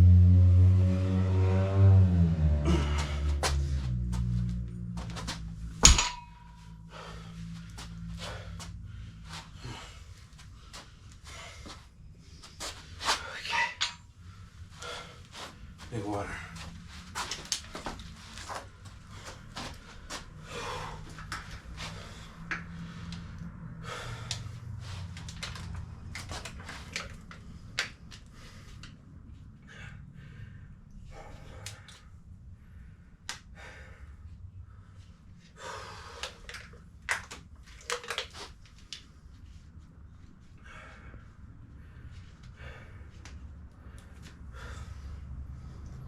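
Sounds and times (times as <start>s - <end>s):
low steady hum: 0.0s - 46.0s
man panting: 2.6s - 3.9s, 6.8s - 11.9s, 12.5s - 16.9s, 18.4s - 25.2s, 29.6s - 36.7s, 40.6s - 46.0s.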